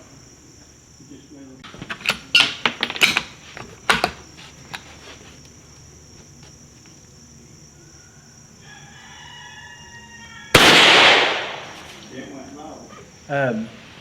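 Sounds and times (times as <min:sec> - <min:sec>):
rooster crowing: 0:07.8 - 0:11.8
rifle shot: 0:10.5 - 0:12.0.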